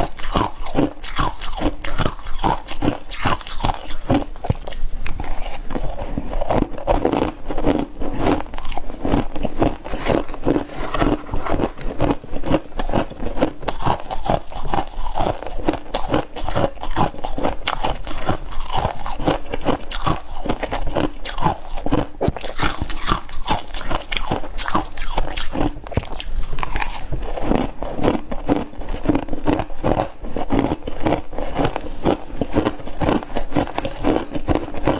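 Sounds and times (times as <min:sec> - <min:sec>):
ice crunching while chewed: 0:00.0 - 0:34.9.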